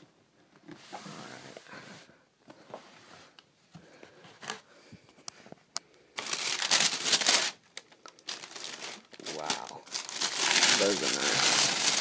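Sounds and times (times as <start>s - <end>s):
paper rustling: 6.2s - 7.6s, 8.3s - 12.0s
paper crinkling: 6.2s - 12.0s.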